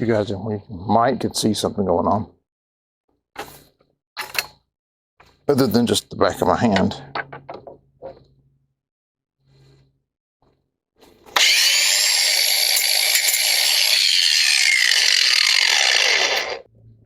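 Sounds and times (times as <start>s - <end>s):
angle grinder grinding metal: 11.3s - 16.7s.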